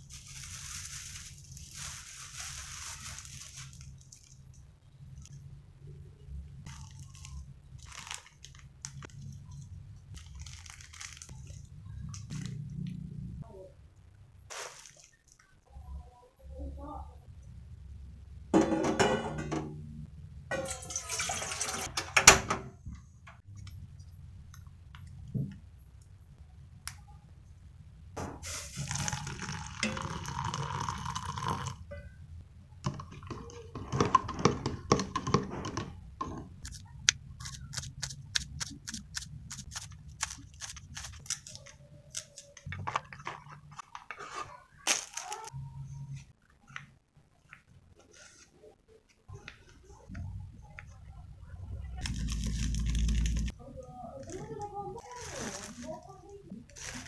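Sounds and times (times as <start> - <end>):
dishes and pans clinking: 18.6 - 19.8, 20.5 - 22.7.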